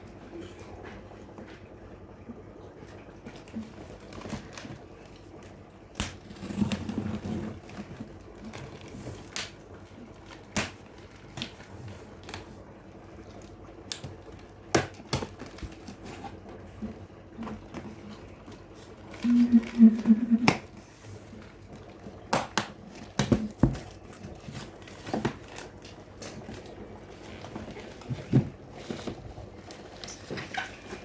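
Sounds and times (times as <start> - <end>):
packaging rustling: 3.5 - 31.0.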